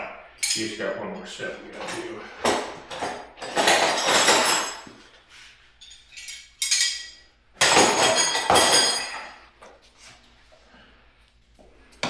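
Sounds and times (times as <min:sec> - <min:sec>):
metal tools clinking and clattering: 0:00.4 - 0:00.8, 0:01.7 - 0:05.0, 0:05.8 - 0:09.4.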